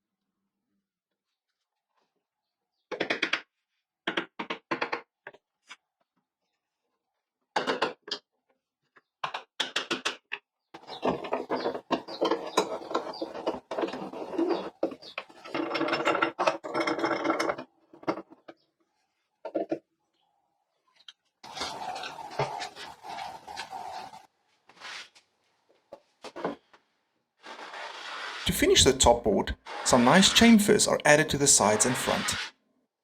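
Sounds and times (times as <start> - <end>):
hand tool scraping wood: 10.8 - 17.6, 21.5 - 25.0, 27.4 - 32.5.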